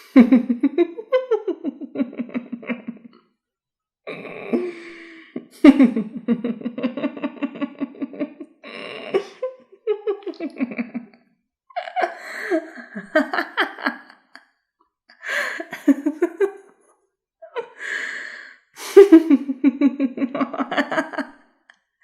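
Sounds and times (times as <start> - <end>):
woman laughing evilly: 0.0 - 3.2, 4.1 - 14.4, 15.2 - 16.7, 17.4 - 21.4.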